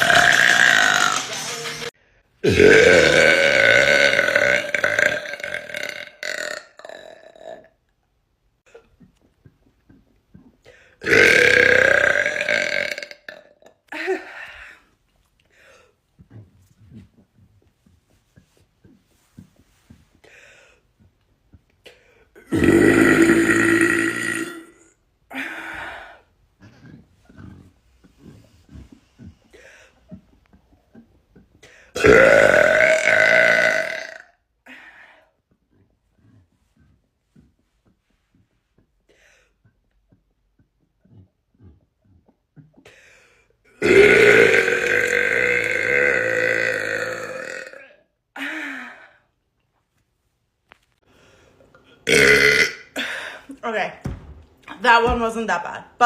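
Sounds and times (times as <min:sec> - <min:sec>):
woman burping: 0:00.0 - 0:01.3, 0:02.4 - 0:07.8, 0:11.0 - 0:14.5, 0:22.4 - 0:26.0, 0:31.9 - 0:34.3, 0:43.8 - 0:49.0, 0:52.0 - 0:53.6.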